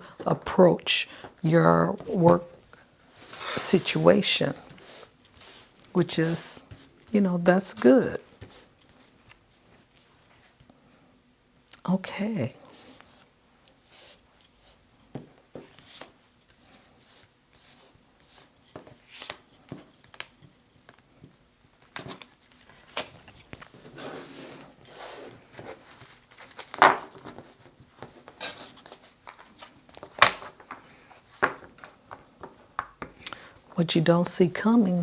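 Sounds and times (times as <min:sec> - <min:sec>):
cards shuffling and rustling: 0:25.4 - 0:33.2.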